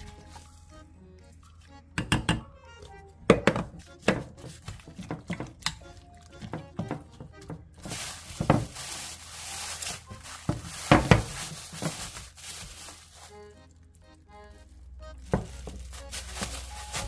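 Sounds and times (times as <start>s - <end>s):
background music: 0.0s - 17.0s
utensils and pots knocking: 2.0s - 2.5s, 3.3s - 5.8s.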